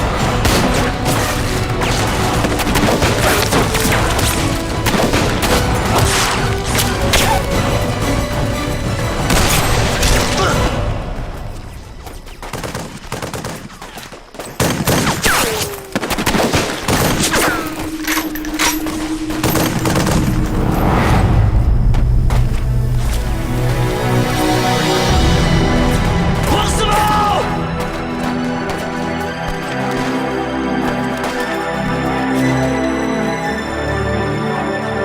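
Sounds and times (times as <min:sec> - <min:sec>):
film music score: 0:00.0 - 0:35.0
rifle and machine-gun fire: 0:12.4 - 0:14.0.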